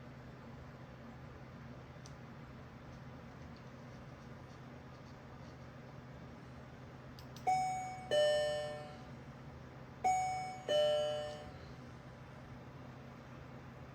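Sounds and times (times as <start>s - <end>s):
two-tone ding-dong chime: 7.5s - 9.1s, 10.1s - 11.6s.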